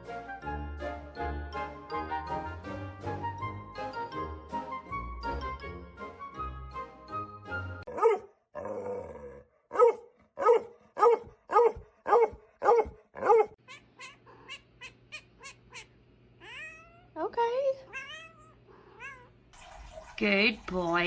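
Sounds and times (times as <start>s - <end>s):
background music: 0.0s - 7.8s
dog barking: 7.9s - 8.7s, 9.7s - 13.6s.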